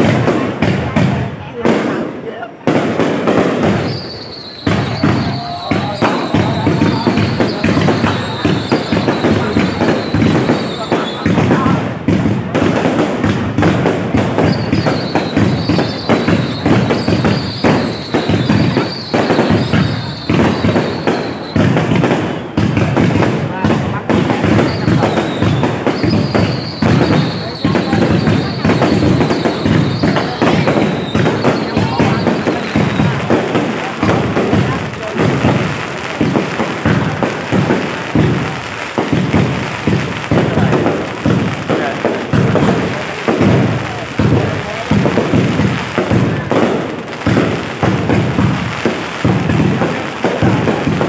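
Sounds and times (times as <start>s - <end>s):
fireworks bangs: 0.0s - 51.0s
high whistle: 3.8s - 11.3s.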